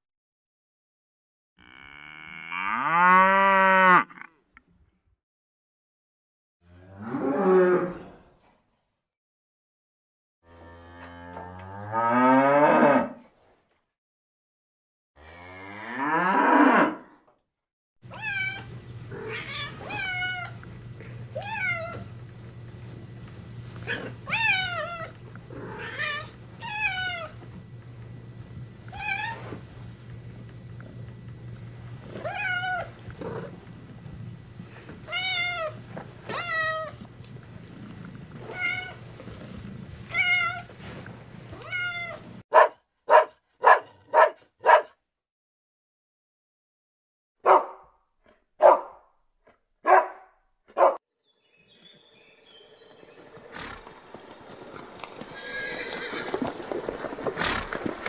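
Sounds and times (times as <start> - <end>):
cat meowing: 18.1 - 20.6, 21.4 - 22.1, 23.9 - 27.4, 28.9 - 29.4, 32.2 - 32.9, 35.1 - 37.0, 38.4 - 39.0, 40.1 - 40.7, 41.6 - 42.2
low steady hum: 18.1 - 42.4
dog barking: 42.5 - 45.0, 47.4 - 47.9, 48.6 - 49.1, 49.8 - 51.0.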